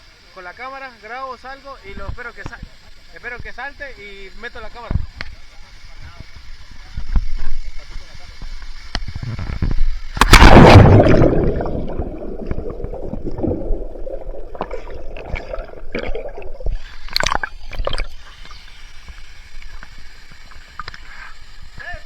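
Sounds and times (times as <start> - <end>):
water bubbling and gurgling: 9.2 - 18.4
person splashing into water: 10.2 - 18.1.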